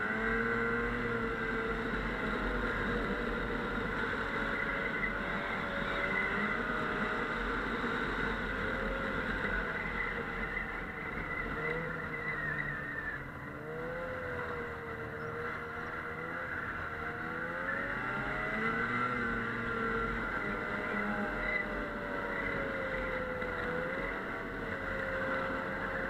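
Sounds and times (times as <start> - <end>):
snowmobile engine running: 0.0 - 26.0.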